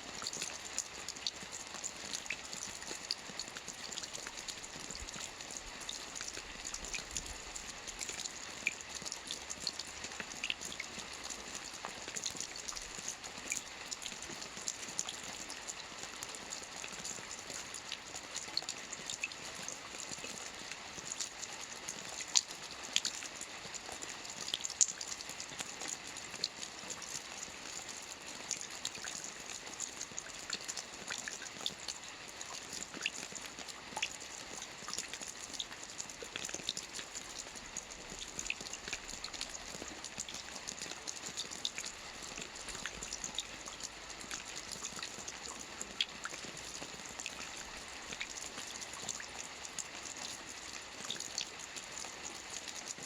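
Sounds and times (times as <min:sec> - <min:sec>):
steady rain hiss: 0:00.0 - 0:53.0
raindrops ticking: 0:20.0 - 0:53.0.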